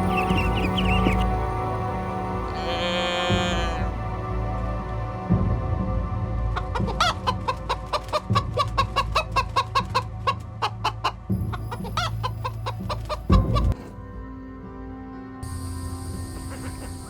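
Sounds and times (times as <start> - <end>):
chickens clucking: 0.0 - 4.0, 6.6 - 13.8, 16.3 - 17.0
low background music: 0.0 - 17.0.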